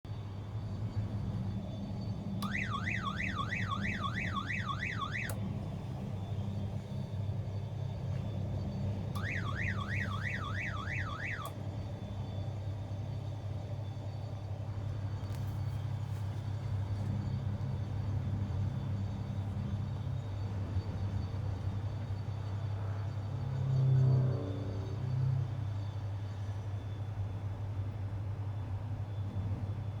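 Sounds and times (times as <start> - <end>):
crane engine droning: 0.1 - 30.0
warbling alarm: 1.2 - 14.1.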